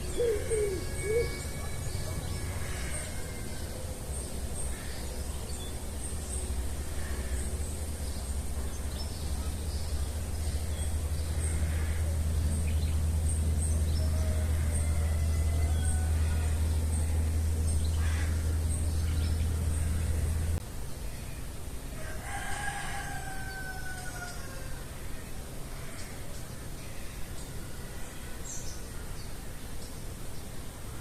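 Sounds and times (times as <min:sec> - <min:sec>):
steady low rumble: 0:00.0 - 0:22.0.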